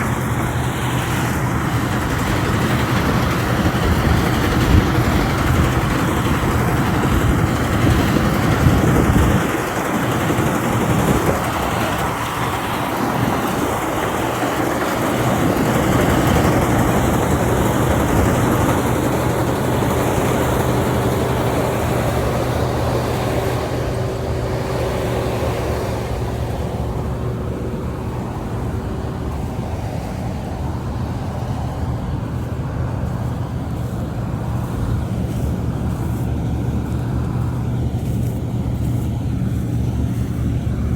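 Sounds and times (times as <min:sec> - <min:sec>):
harvester engine humming: 0:00.0 - 0:40.9.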